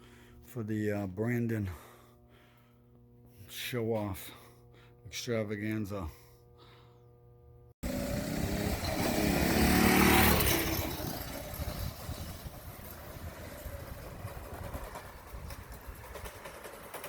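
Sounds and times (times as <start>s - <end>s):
mini bike engine passing by: 7.8s - 17.0s.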